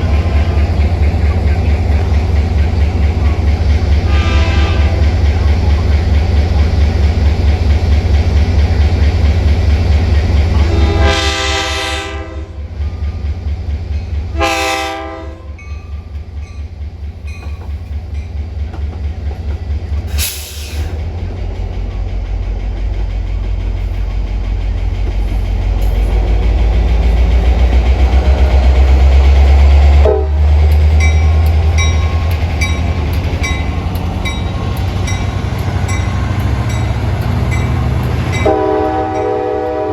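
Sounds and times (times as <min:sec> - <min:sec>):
low rumble of train: 0:00.0 - 0:39.9
train horn blasts: 0:04.0 - 0:05.3, 0:10.5 - 0:12.7, 0:14.3 - 0:15.7, 0:29.8 - 0:30.7, 0:38.1 - 0:39.9.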